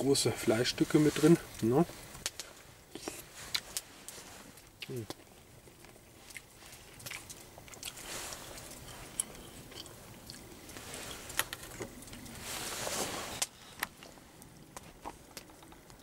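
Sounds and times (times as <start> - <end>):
soft rustling or scraping: 0.1 - 4.7, 6.2 - 7.0, 7.8 - 9.7, 10.5 - 15.2.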